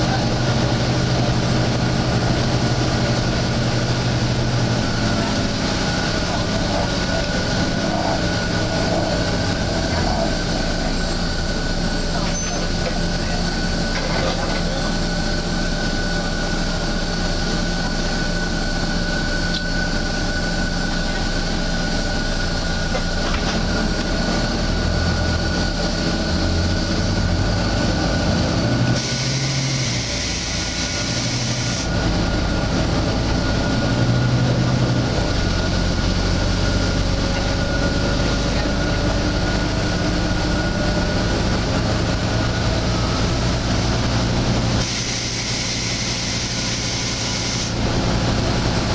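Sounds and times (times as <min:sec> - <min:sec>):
bus engine drone: 0:00.0 - 0:48.9
thin steady whine: 0:27.9 - 0:48.9
air hiss: 0:44.8 - 0:47.8.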